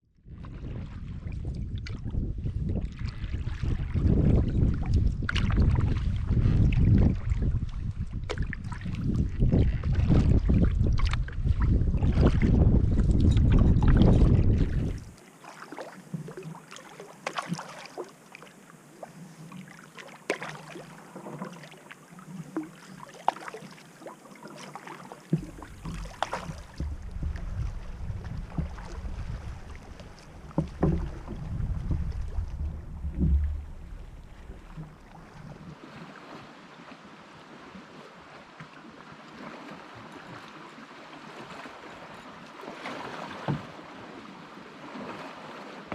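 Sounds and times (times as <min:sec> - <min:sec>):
wind buffeting microphone: 0:00.2 - 0:15.2, 0:25.4 - 0:35.7
water splashing around canoe: 0:00.3 - 0:45.9.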